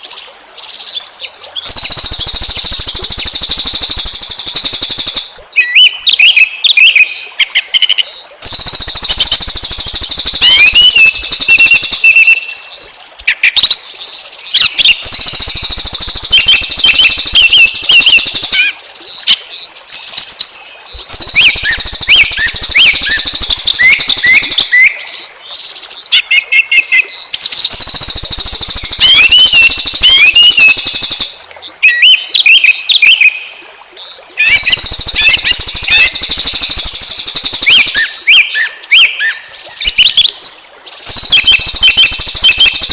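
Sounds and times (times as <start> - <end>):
songbirds trilling and chirping: 0.0 - 42.9.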